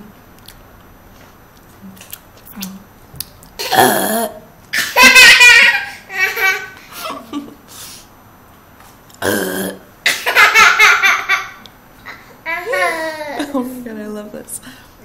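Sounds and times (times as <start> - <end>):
woman pretend burping: 3.6 - 4.5, 9.2 - 9.9
baby laughing: 4.8 - 7.5, 10.1 - 13.6.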